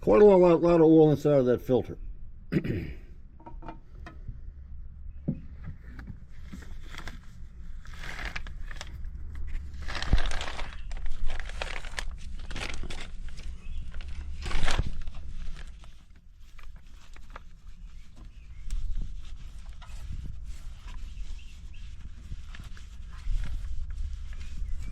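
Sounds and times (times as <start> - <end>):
low steady hum: 0.0 - 24.9
rustling: 5.7 - 24.9.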